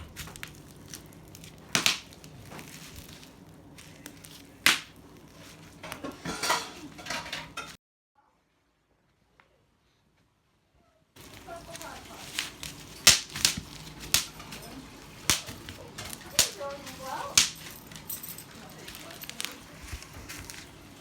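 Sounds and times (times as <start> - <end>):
bubble wrap popping: 0.0 - 6.0, 11.2 - 21.0
bubble wrap crinkling: 0.0 - 6.3, 11.2 - 21.0.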